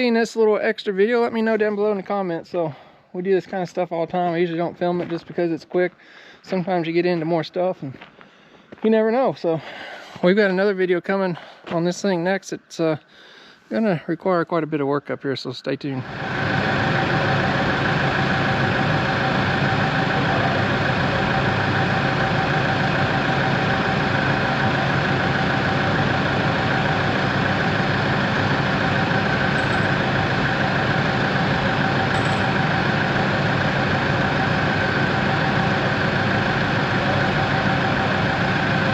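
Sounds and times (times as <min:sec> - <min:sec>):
constant whine: 0:00.0 - 0:09.6, 0:14.5 - 0:38.9
diesel engine idling: 0:16.0 - 0:38.9.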